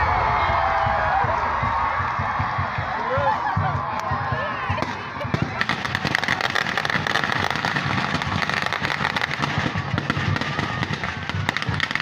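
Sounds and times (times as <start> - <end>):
rapid crackling and popping: 4.8 - 12.0.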